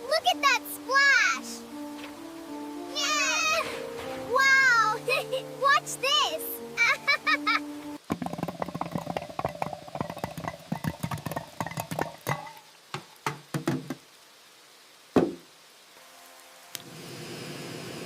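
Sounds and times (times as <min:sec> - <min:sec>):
steady hiss: 0:00.0 - 0:18.0
rapid irregular knocking: 0:08.0 - 0:14.0
loud knock: 0:15.2 - 0:15.4.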